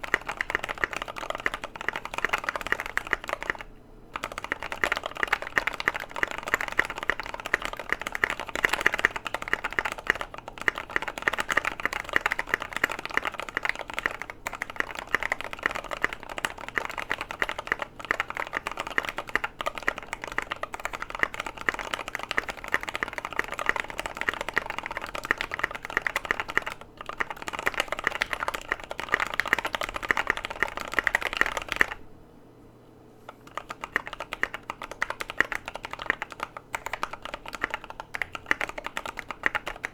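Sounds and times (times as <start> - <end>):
typing on mechanical keyboard: 0.0 - 32.0, 33.3 - 39.9.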